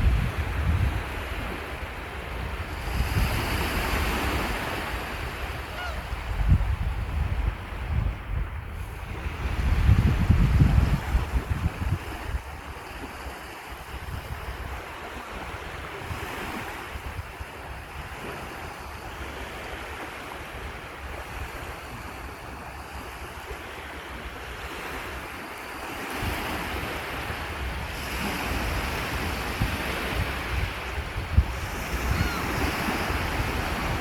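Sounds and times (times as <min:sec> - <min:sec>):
wind buffeting microphone: 0:00.0 - 0:18.6, 0:26.1 - 0:34.0
surf breaking ashore: 0:00.0 - 0:34.0.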